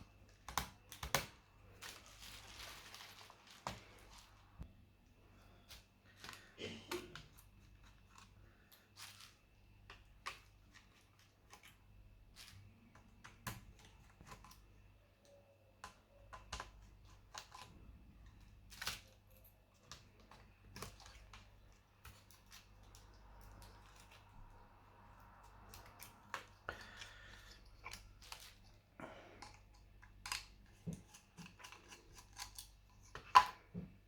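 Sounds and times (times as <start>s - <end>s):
plastic laptop parts clicking: 0.2s - 1.4s, 15.2s - 24.2s.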